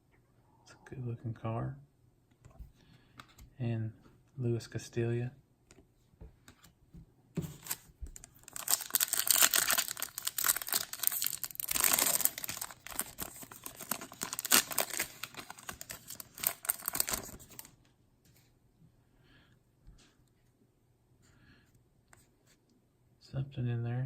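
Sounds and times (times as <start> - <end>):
foil wrapper tearing and crinkling: 7.6 - 17.7.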